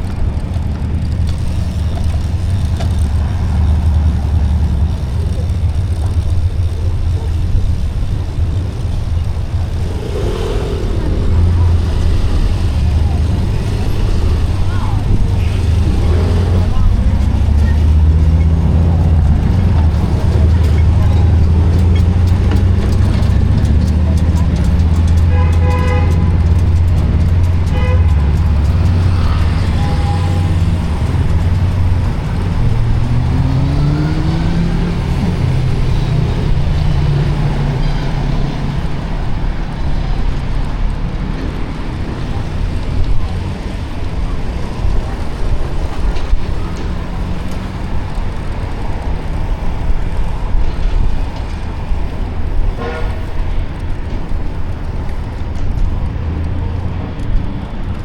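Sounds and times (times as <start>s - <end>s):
engine accelerating: 0.0s - 52.8s
road traffic rumble: 0.0s - 58.0s
car horn toots: 25.2s - 26.8s, 27.6s - 30.8s, 52.7s - 53.4s.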